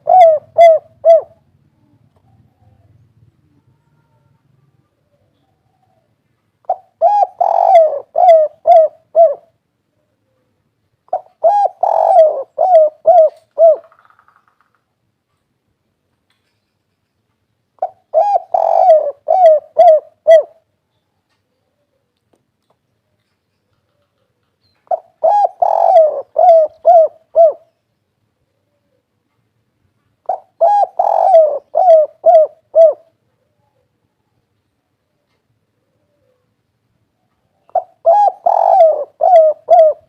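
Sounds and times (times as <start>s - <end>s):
dove cooing: 0.0s - 14.1s, 17.8s - 20.7s, 23.8s - 27.7s, 30.2s - 34.2s, 35.1s - 36.6s, 37.4s - 40.0s.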